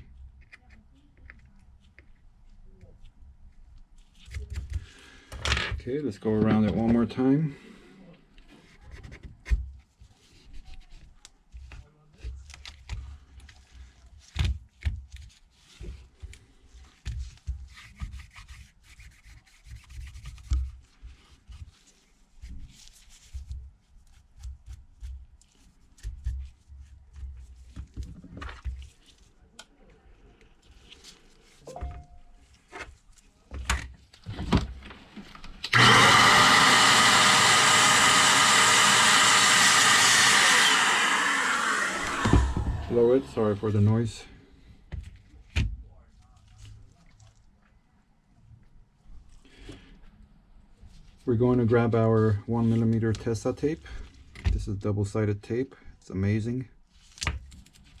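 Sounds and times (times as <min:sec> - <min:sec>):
air blower hissing: 0:35.7 - 0:43.8.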